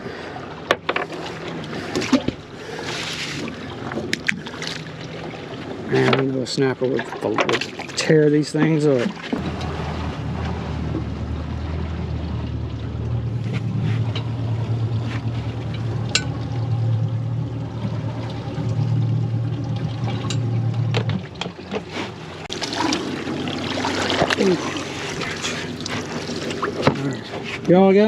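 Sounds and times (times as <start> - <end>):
electric trolling motor humming: 9.3 - 27.0.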